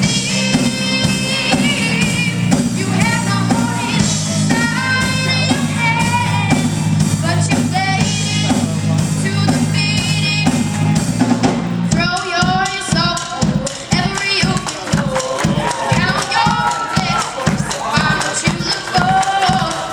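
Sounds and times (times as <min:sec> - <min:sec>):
person singing: 0:00.0 - 0:10.8, 0:11.9 - 0:19.9
held low chords: 0:00.0 - 0:12.1
drums: 0:00.0 - 0:19.9.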